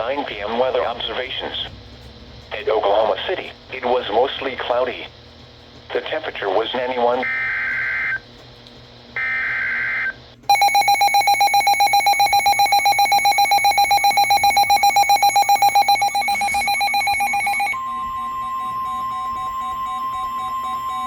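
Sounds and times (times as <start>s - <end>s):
harsh electronic alarm beeping: 9.2s - 21.0s
steady one-pitch alarm tone: 9.2s - 21.0s
faint beeps: 10.5s - 21.0s
screechy two-pitch data burst: 10.5s - 21.0s.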